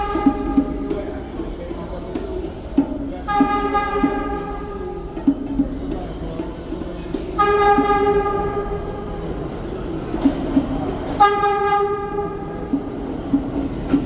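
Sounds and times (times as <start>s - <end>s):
subway train horn blasts: 0.0s - 1.2s, 3.3s - 5.3s, 7.4s - 14.0s
moving train rumble: 0.0s - 14.0s.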